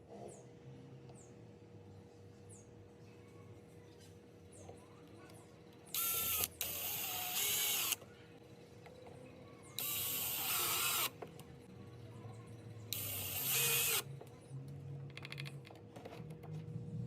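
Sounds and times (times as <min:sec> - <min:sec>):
power drill driving a screw: 0:06.0 - 0:08.0, 0:09.8 - 0:11.1, 0:12.9 - 0:14.0.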